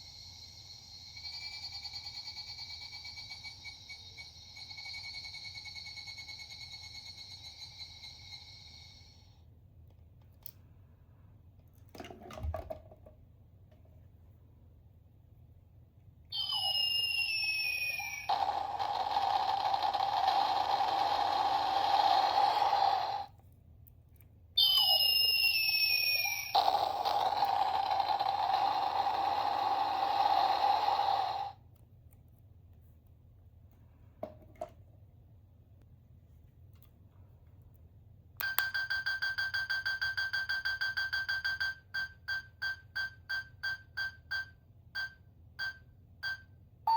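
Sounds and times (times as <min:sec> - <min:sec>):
toy electronic tone: 0:00.0 - 0:09.4, 0:16.3 - 0:23.3, 0:24.6 - 0:31.6, 0:38.4 - 0:46.9
toy speaker rushing noise with hum: 0:16.4 - 0:23.3, 0:24.6 - 0:31.6.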